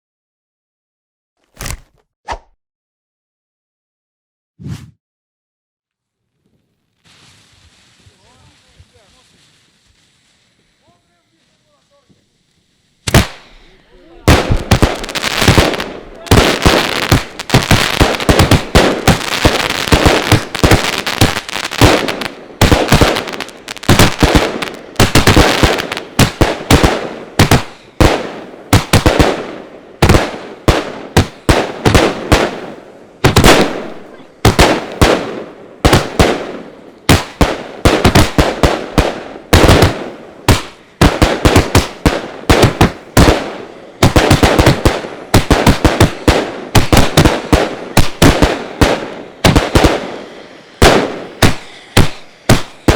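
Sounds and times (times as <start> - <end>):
fireworks cake firing sharp bangs: 13.0 - 52.9.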